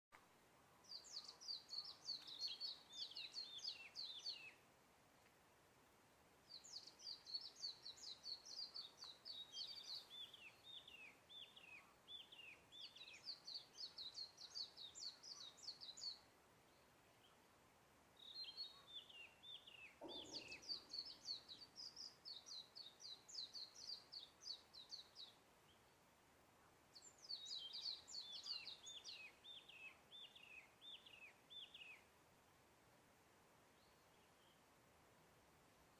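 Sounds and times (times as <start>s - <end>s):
songbird twittering: 0.8s - 4.6s, 6.5s - 17.4s, 18.2s - 25.9s, 27.0s - 32.1s.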